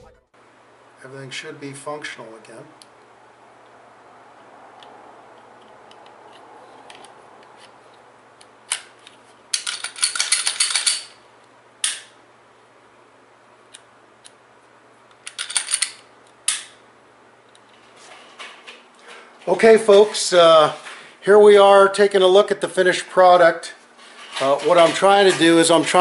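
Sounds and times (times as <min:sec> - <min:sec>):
metallic clicks of pistol parts: 0:08.4 - 0:11.1, 0:11.8 - 0:12.1, 0:15.1 - 0:16.8.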